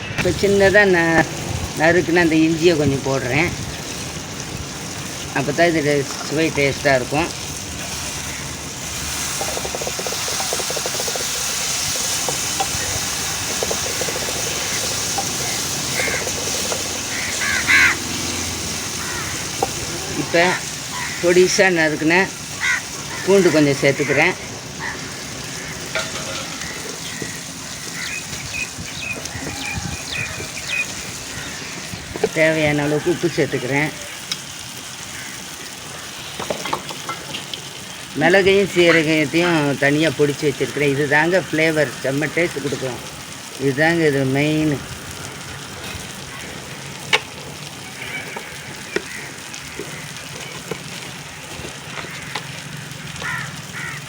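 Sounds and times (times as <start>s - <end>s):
food sizzling in a pan: 0.2s - 54.0s
spoon tapping against pan: 9.4s - 12.8s
bird chirping: 26.5s - 32.2s.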